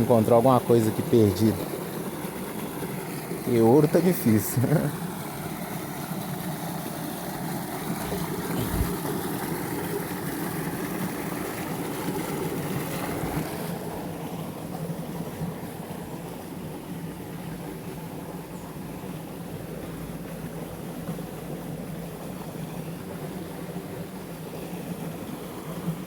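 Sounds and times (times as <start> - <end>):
low steady hum: 7.6 - 9.3
waterfall rushing: 7.8 - 9.2.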